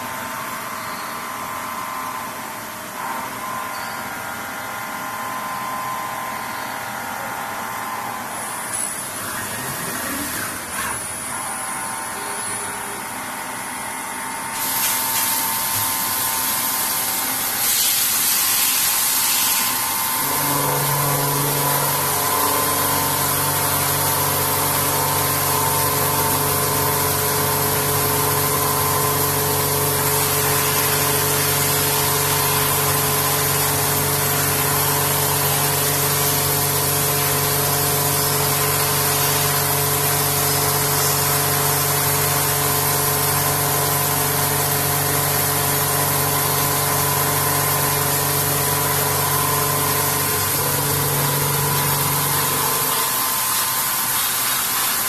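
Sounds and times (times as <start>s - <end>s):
milling machine humming: 0.0s - 55.0s.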